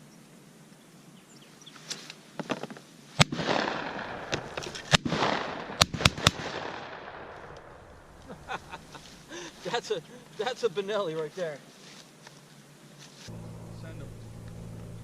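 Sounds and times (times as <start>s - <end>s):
shotgun shots: 3.2s - 7.8s.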